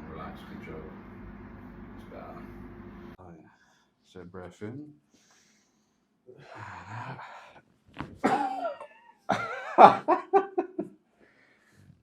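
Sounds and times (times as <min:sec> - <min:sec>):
man grunting: 0:06.4 - 0:07.4
man groaning: 0:06.4 - 0:07.5
man breathing: 0:11.2 - 0:12.0.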